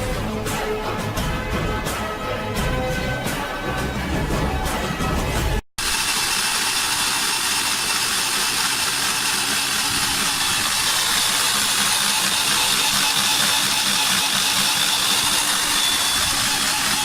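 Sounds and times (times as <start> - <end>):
core drill motor whining: 5.8 - 17.0.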